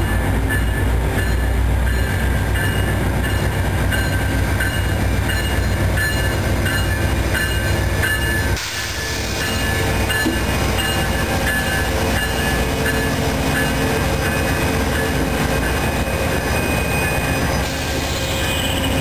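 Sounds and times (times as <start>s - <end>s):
train rolling on rails: 0.0s - 19.0s
wheels squealing: 13.8s - 19.0s.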